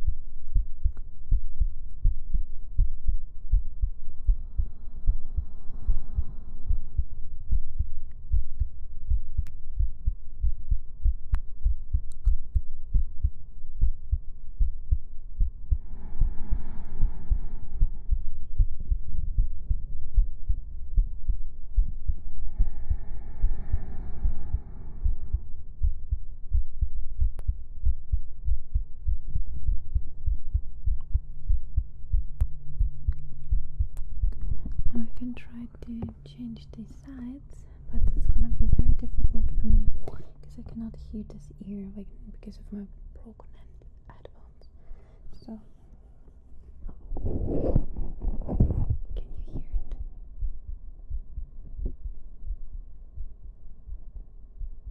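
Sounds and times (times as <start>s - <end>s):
heartbeat: 0.0s - 42.1s, 46.8s - 54.9s
faint muffled sound: 0.0s - 54.9s.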